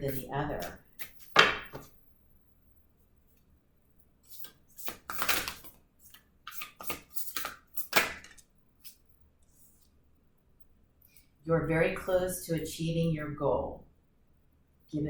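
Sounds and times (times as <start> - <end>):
cards rustling and tapping: 0.1 - 1.9, 4.3 - 9.0.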